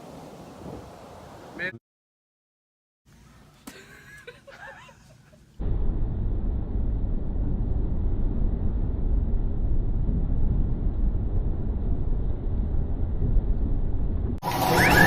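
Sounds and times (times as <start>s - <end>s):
loud steady low rumble: 5.6s - 15.0s.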